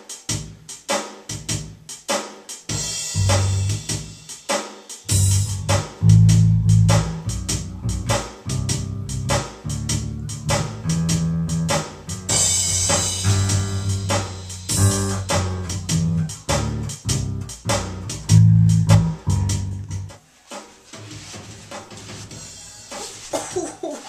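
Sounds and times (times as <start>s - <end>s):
backing track with drums: 0.0s - 24.0s
electric bass plucked: 3.2s - 3.9s, 5.1s - 20.1s.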